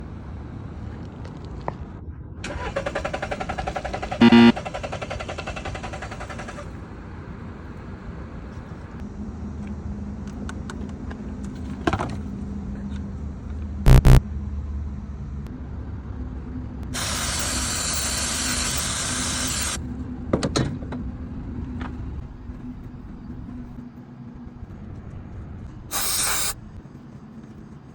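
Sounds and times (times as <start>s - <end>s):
car engine humming: 2.5s - 5.6s
hiss of spray: 17.0s - 19.8s, 25.9s - 26.6s.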